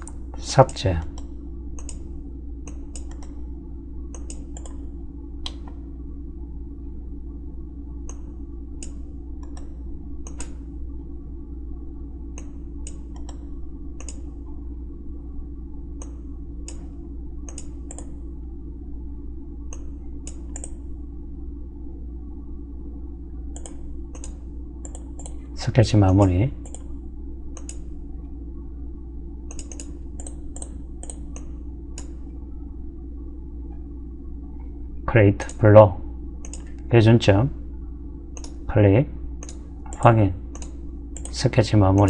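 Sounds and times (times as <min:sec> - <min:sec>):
computer mouse clicking: 0:00.0 - 0:03.4, 0:04.1 - 0:05.8, 0:08.0 - 0:10.6, 0:12.3 - 0:14.3, 0:16.0 - 0:18.2, 0:19.7 - 0:20.8, 0:23.5 - 0:25.5, 0:26.2 - 0:26.9, 0:27.5 - 0:27.9, 0:29.5 - 0:32.2, 0:36.4 - 0:36.9, 0:38.4 - 0:38.6, 0:39.4 - 0:41.4
low electrical hum: 0:00.0 - 0:42.0.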